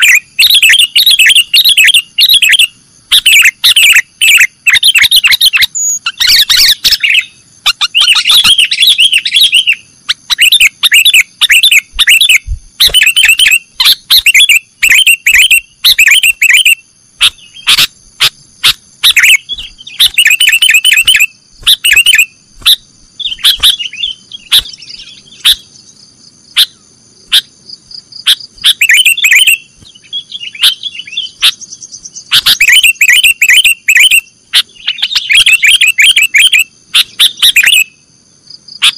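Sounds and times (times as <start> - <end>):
bird song chattering warbling: 0.0 - 37.9.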